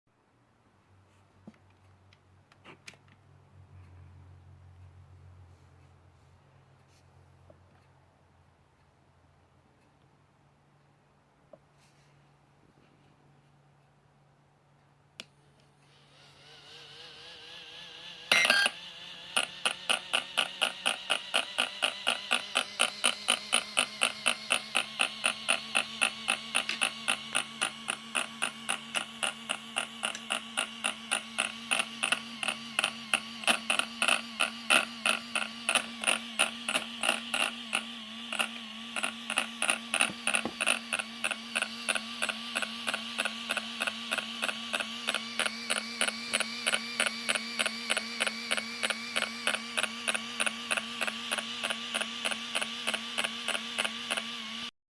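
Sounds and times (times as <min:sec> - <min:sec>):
electronics humming: 0:15.8 - 0:54.7
even clicking: 0:18.6 - 0:54.4.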